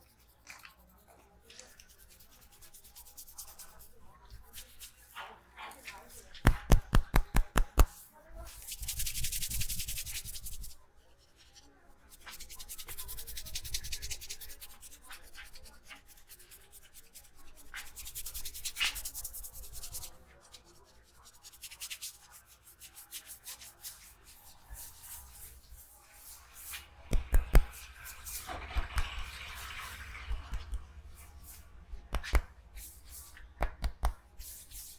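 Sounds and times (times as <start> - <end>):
hands rubbing through hair: 6.0 - 10.8, 16.4 - 34.9
sharp taps: 6.4 - 7.9, 32.1 - 32.5, 33.6 - 34.2.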